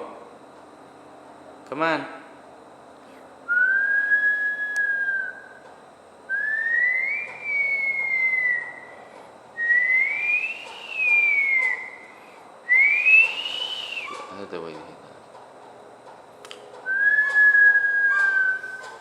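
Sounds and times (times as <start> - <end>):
bird wailing whistled cry: 6.3 - 14.3.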